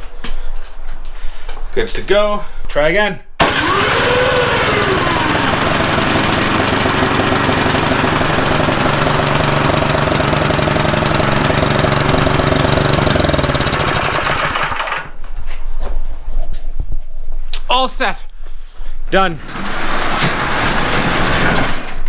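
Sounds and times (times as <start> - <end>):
snowblower engine running: 3.4 - 15.2.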